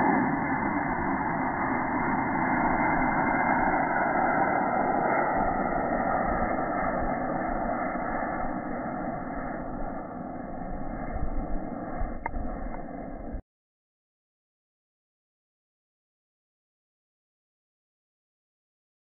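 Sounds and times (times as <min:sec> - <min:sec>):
aircraft engine drone overhead: 0:00.0 - 0:13.4.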